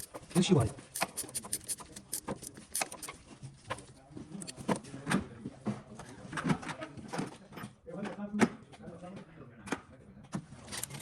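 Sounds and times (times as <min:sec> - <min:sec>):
tools clicking and clinking: 0:00.0 - 0:03.8, 0:10.7 - 0:11.0.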